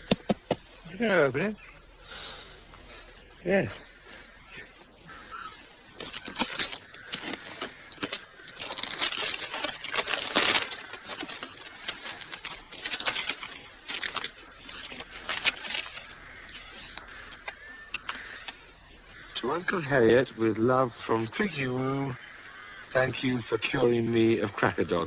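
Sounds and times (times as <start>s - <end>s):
paper rustling and tearing: 6.0s - 17.2s.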